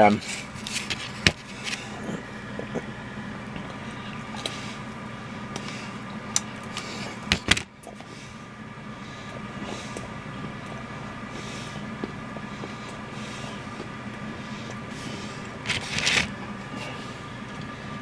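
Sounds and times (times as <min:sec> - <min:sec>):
steady background hum: 0:00.0 - 0:18.0.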